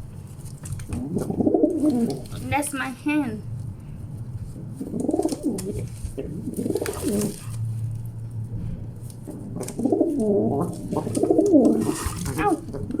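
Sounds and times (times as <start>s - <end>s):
low steady hum: 0.0s - 13.0s
pigeon cooing: 0.8s - 2.4s, 4.4s - 7.6s, 9.1s - 13.0s.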